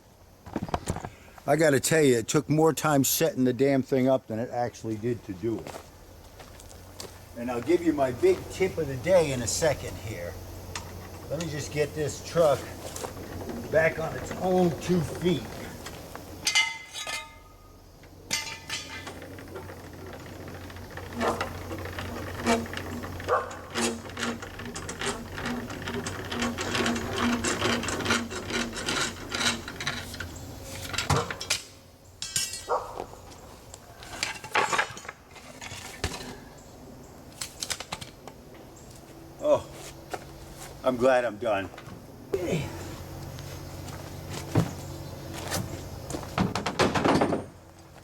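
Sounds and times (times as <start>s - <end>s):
steady low hum: 4.4s - 34.4s
metal clicks and clanks of tools: 16.4s - 32.7s.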